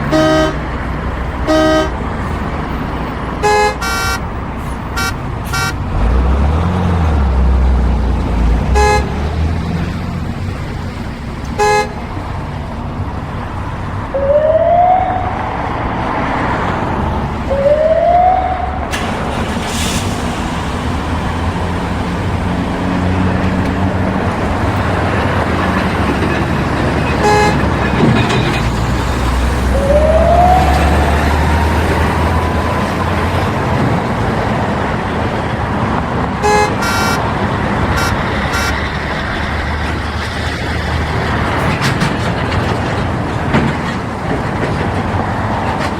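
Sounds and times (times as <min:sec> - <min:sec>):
car horns tooting: 0:00.0 - 0:02.5, 0:03.4 - 0:06.1, 0:08.6 - 0:09.5, 0:11.5 - 0:12.2, 0:25.8 - 0:28.8, 0:36.4 - 0:39.1
traffic rumble: 0:00.0 - 0:45.9
short rising siren tones: 0:14.1 - 0:15.7, 0:17.5 - 0:18.9, 0:29.6 - 0:31.8, 0:36.4 - 0:37.2, 0:38.0 - 0:38.8.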